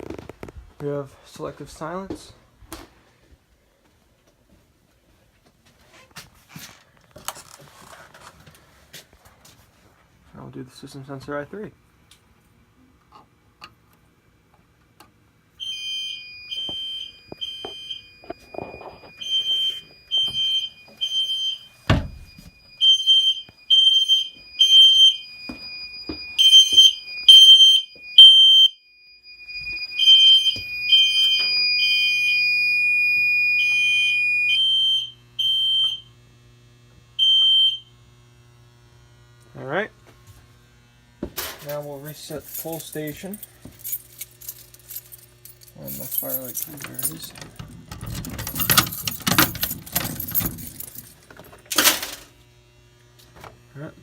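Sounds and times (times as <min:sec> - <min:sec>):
smoke detector beeping: 0:15.6 - 0:36.1, 0:37.2 - 0:37.9.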